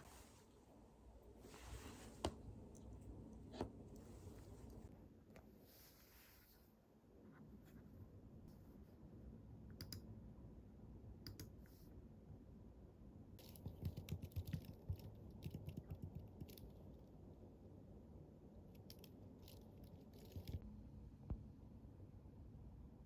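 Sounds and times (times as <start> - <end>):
keyboard typing: 13.4 - 16.8.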